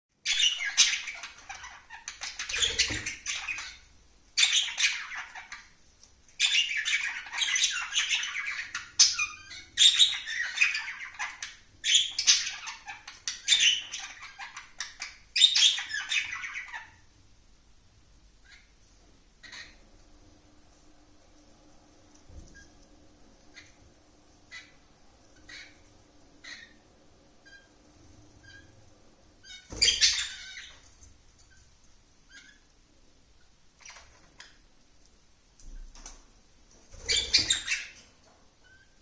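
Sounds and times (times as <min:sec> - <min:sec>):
pet bird squawking and chattering: 0:00.2 - 0:03.8, 0:06.4 - 0:17.0, 0:29.4 - 0:30.8, 0:37.0 - 0:38.0.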